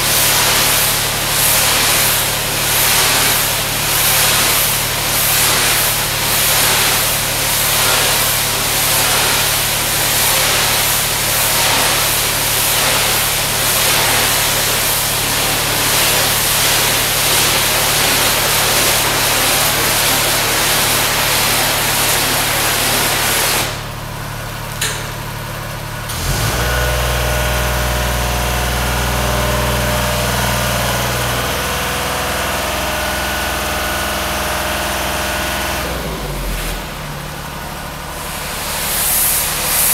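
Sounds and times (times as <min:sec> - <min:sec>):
pressure washer water spray hiss: 0:00.0 - 0:24.0, 0:37.9 - 0:39.9.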